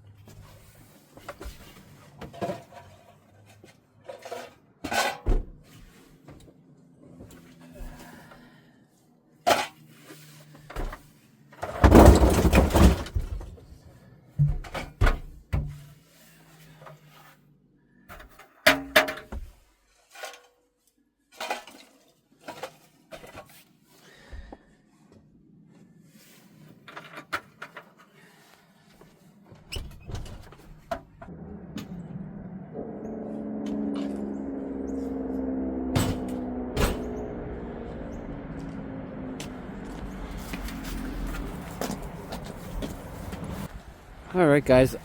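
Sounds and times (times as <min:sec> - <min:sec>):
rustling clatter: 0:11.6 - 0:13.7.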